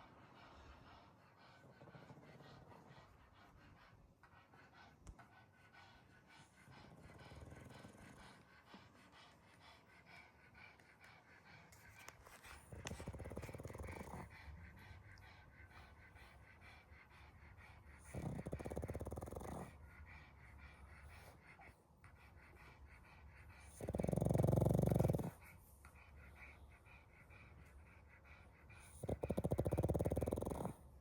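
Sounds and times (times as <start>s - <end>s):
dog snoring: 12.6s - 14.9s, 17.9s - 19.8s, 23.6s - 25.4s, 28.8s - 30.8s.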